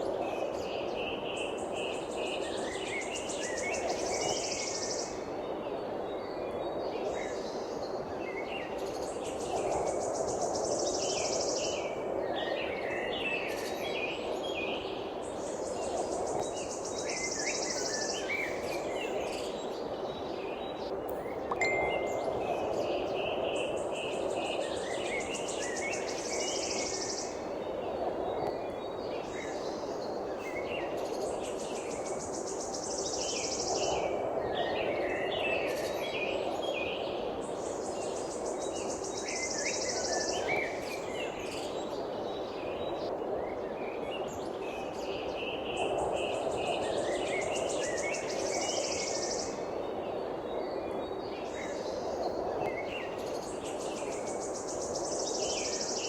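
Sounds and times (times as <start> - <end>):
steady background hiss: 0.0 - 56.0
birds chirping and twittering: 15.6 - 31.3.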